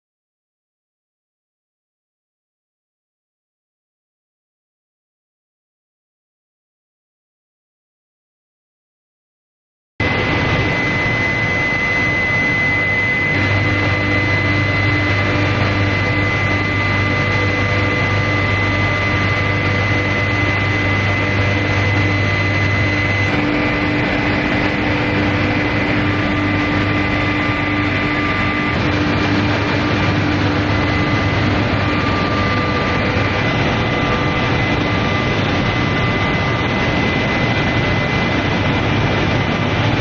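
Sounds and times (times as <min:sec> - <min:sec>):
deep hum: 0:10.0 - 0:40.0
furnace machine whine: 0:10.0 - 0:40.0
machine hum: 0:10.0 - 0:40.0.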